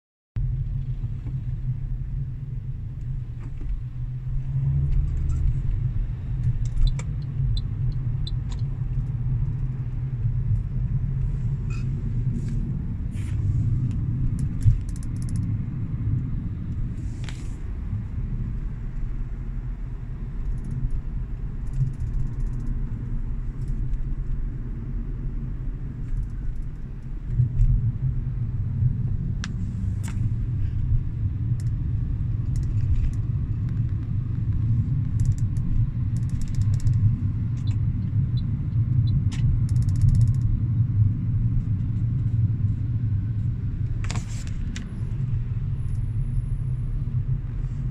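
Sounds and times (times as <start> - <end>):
car cabin road rumble: 0.4 - 47.9
short clicks and rattles: 21.6 - 22.8, 35.2 - 37.0, 39.7 - 40.5.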